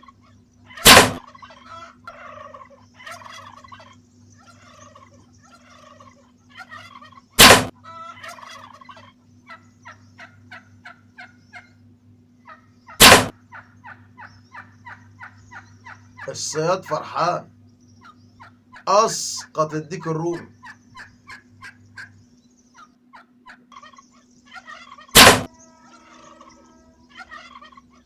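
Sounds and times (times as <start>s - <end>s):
wild turkeys yelping and clucking: 0.0s - 28.0s
loud short burst: 0.8s - 1.2s, 7.4s - 7.7s, 13.0s - 13.3s, 25.2s - 25.5s.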